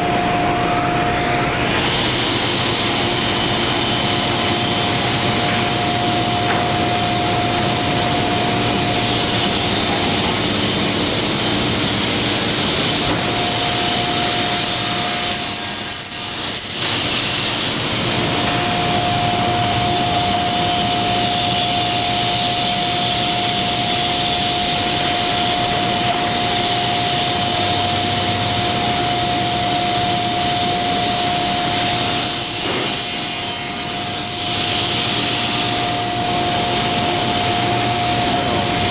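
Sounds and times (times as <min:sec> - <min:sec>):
panel saw whining: 0:13.2 - 0:22.1
high-pitched tones: 0:14.2 - 0:16.9, 0:32.2 - 0:34.6.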